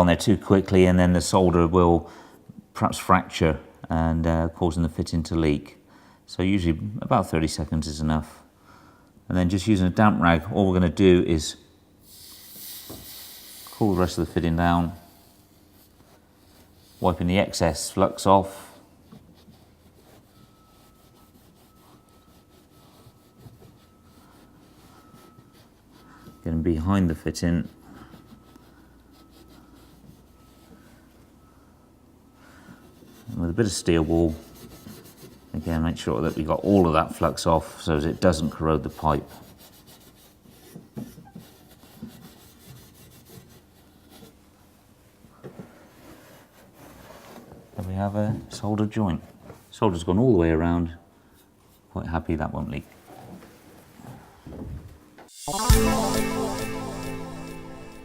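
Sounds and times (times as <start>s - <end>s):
damp rag rubbing on pipe: 12.1s - 18.3s, 18.9s - 31.1s, 32.8s - 44.6s, 45.7s - 48.2s
steel wool scrubbing pipe: 12.9s - 18.2s.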